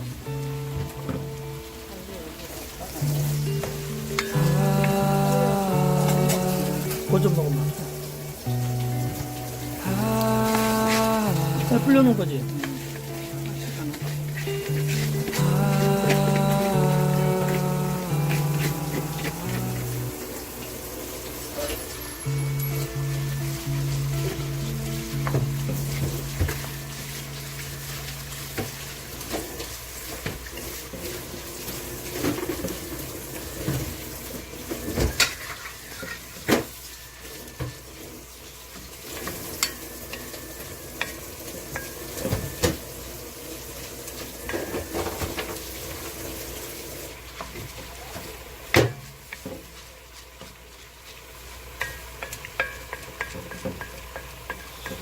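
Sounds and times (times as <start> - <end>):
food sizzling in a pot: 0.0 - 55.0
spoon knocking and scraping pot: 51.8 - 55.0.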